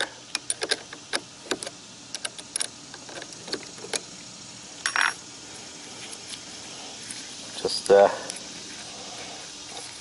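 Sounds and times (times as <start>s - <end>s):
wrench clicking on metal bolts: 0.0s - 4.1s.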